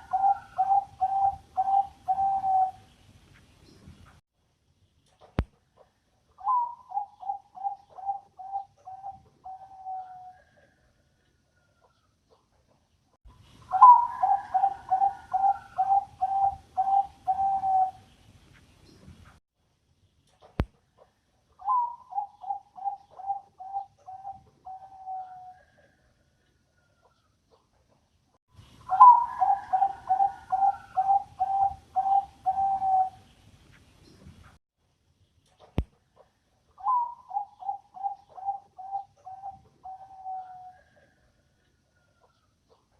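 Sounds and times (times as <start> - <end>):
dove cooing: 0.0 - 2.8, 6.4 - 11.0, 13.6 - 18.0, 21.6 - 26.0, 28.8 - 33.2, 36.8 - 41.2.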